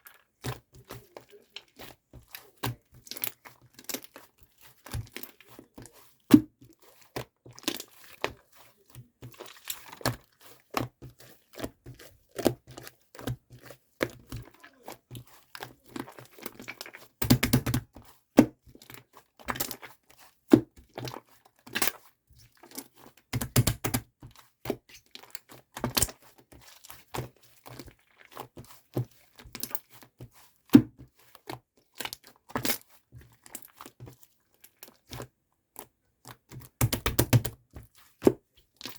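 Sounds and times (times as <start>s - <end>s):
slime squishing and popping: 9.4s - 18.6s, 23.3s - 24.1s, 36.4s - 37.6s.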